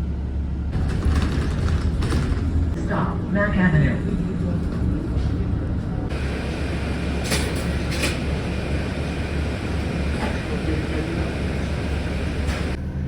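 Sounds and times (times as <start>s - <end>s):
vehicle road noise rumble: 0.0s - 13.0s
rattles: 0.7s - 2.8s.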